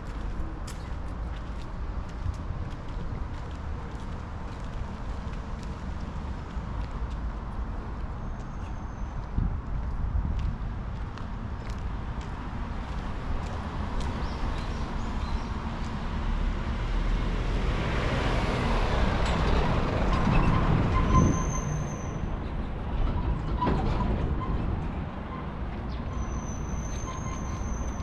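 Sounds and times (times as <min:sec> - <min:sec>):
vehicle passing by: 0:14.9 - 0:21.2.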